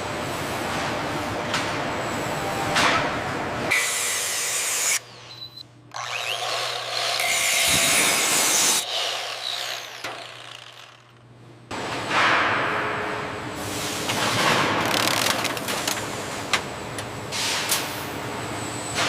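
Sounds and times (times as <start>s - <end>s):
power tool running: 5.9s - 11.3s.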